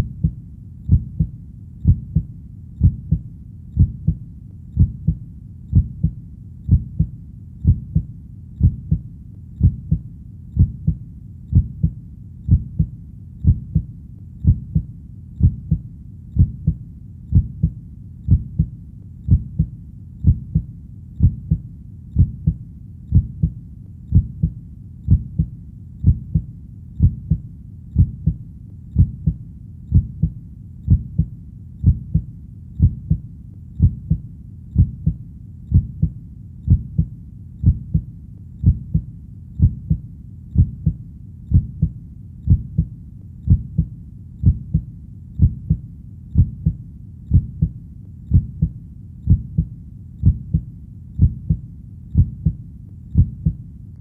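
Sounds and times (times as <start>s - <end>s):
heartbeat double thump: 0.9s - 3.2s, 3.8s - 4.2s, 4.8s - 9.0s, 9.6s - 10.0s, 10.6s - 15.8s, 16.4s - 18.7s, 19.3s - 21.6s, 22.2s - 27.4s, 28.0s - 28.4s, 29.0s - 33.2s, 33.8s - 34.2s, 34.8s - 40.0s, 40.6s - 42.9s, 43.5s - 45.8s, 46.4s - 51.6s, 52.2s - 52.6s, 53.2s - 53.6s.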